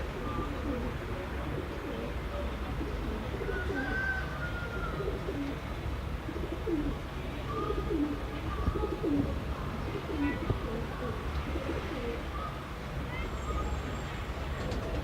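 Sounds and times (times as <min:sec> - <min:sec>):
pigeons cooing: 0:00.0 - 0:05.6, 0:06.2 - 0:12.3.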